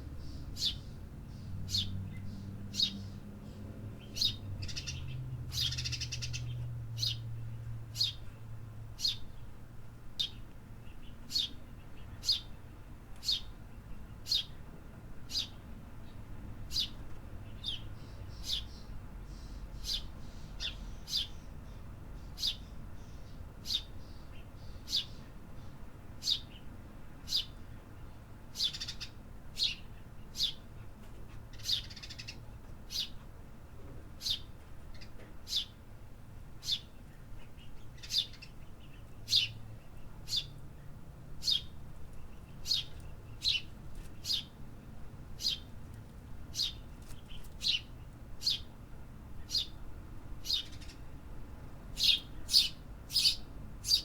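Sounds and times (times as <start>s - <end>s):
bird chirping: 0.0s - 8.4s, 9.0s - 9.5s, 10.2s - 14.6s, 15.3s - 26.7s, 28.6s - 30.6s, 31.5s - 33.2s, 34.2s - 35.8s, 36.6s - 40.6s, 41.4s - 44.6s, 45.4s - 45.7s, 46.5s - 48.7s, 49.4s - 49.8s, 50.4s - 51.1s, 51.9s - 54.0s
city background rumble: 0.0s - 54.0s.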